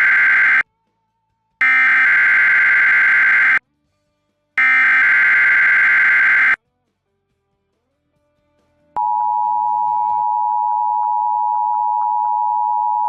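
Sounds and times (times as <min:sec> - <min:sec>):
harsh buzzy data bursts: 0:00.0 - 0:00.6, 0:01.6 - 0:03.6, 0:04.6 - 0:06.6.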